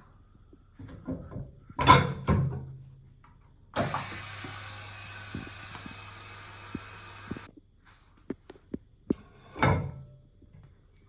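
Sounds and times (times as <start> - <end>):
air hiss: 3.8 - 7.5
low motor hum: 3.8 - 7.5.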